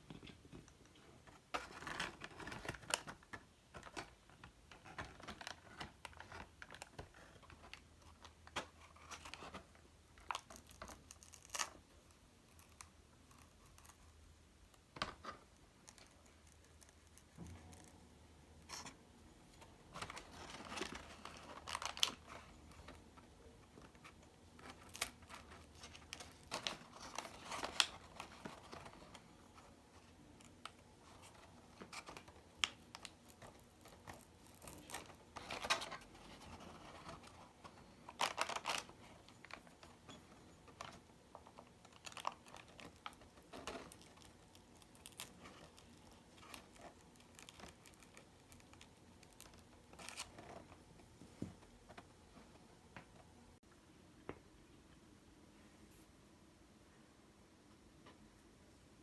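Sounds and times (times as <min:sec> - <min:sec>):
paper rustling and crinkling: 0:01.2 - 0:09.7, 0:18.6 - 0:52.6.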